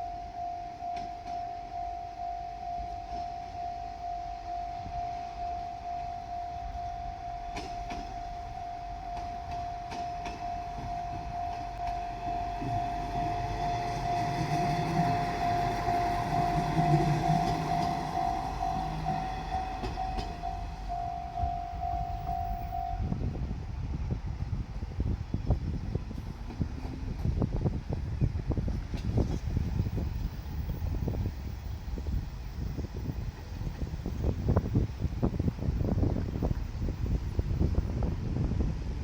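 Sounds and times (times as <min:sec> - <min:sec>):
level crossing alarm ringing: 0:00.0 - 0:23.2
railcar engine and wheels: 0:00.0 - 0:39.0
wheels clicking over rail joints: 0:00.1 - 0:23.0, 0:25.5 - 0:39.0.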